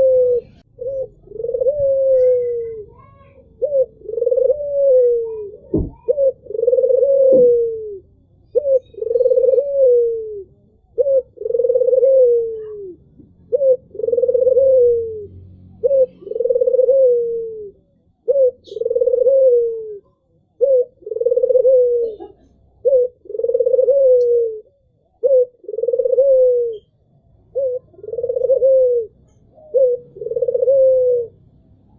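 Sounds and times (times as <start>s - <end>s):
dove cooing: 0.0s - 31.6s
low thump: 5.7s - 6.1s.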